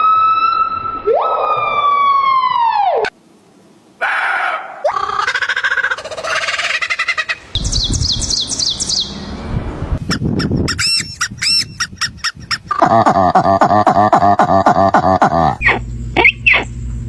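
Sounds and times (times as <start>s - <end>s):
bird pulsing squawk: 4.0s - 9.1s, 10.0s - 12.8s, 13.9s - 16.8s
sharp arched bird chirps: 6.0s - 9.4s, 15.6s - 16.9s.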